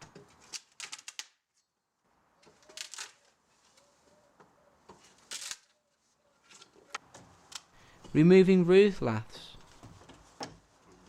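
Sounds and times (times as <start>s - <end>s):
wood cracking and creaking: 0.0s - 1.4s, 2.4s - 3.4s.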